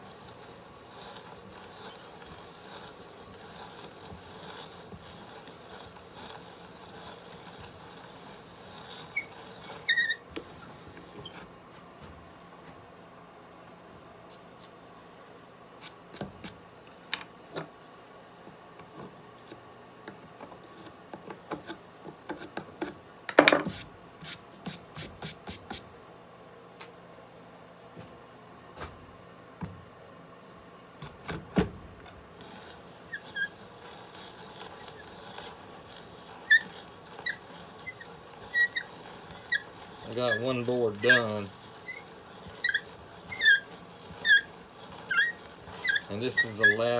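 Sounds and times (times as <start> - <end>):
hand brace drilling into wood: 0.0 - 11.2, 32.0 - 46.9
small squeaks: 0.0 - 11.4, 32.0 - 46.9.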